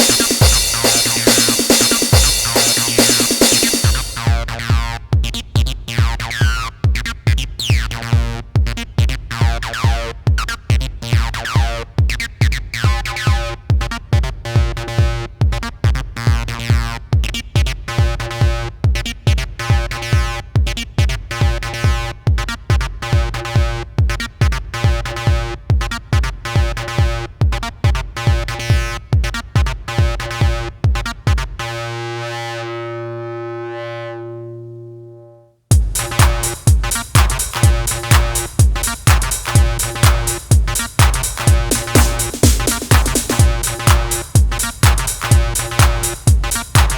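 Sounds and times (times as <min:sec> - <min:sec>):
squelchy synth bass line: 0:00.0 - 0:15.6, 0:35.7 - 0:46.9
four-on-the-floor kick drum: 0:00.0 - 0:31.6, 0:35.7 - 0:46.9.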